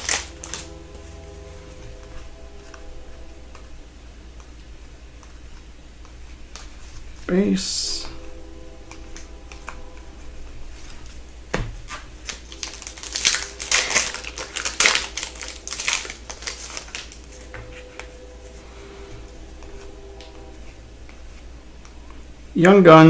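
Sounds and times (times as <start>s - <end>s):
foil wrapper crinkling: 0.0s - 0.8s, 12.2s - 18.2s.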